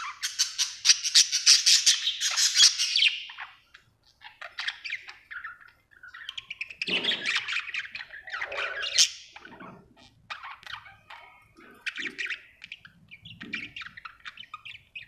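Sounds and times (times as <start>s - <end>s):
budgerigar chirping: 0.0s - 15.0s.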